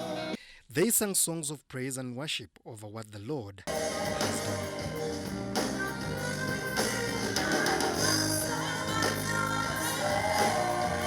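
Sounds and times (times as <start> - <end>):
voices singing: 0.0 - 0.4, 3.7 - 11.0
band with bass and drums: 3.7 - 11.0.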